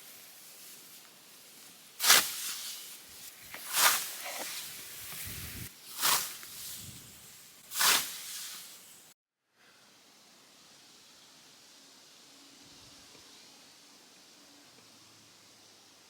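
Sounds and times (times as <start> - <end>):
scythe blade swishing through grass: 0.0 - 9.0.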